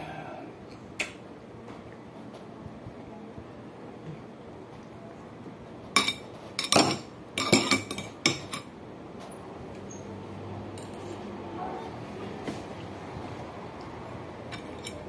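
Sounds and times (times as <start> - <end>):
cutlery clinking on tableware: 6.0 - 8.7, 14.5 - 15.0.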